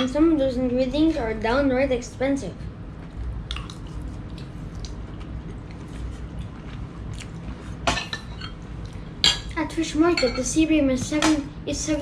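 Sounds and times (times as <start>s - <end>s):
chewing: 3.0s - 7.8s.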